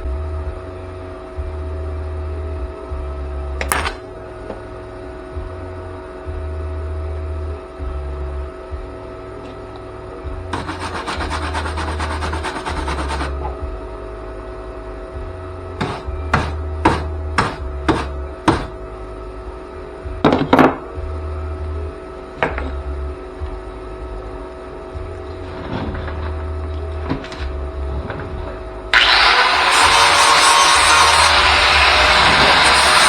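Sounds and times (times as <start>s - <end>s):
electrical hum: 0.0s - 33.0s
welding arc crackle: 29.0s - 33.0s.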